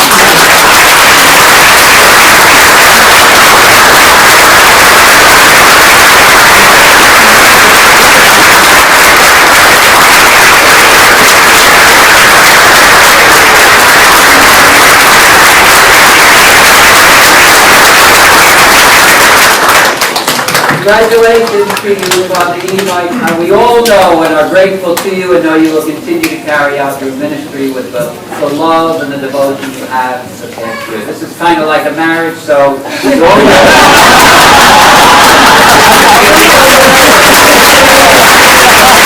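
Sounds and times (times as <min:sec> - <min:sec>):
congregation applauding: 0:00.0 - 0:23.0, 0:33.2 - 0:39.0.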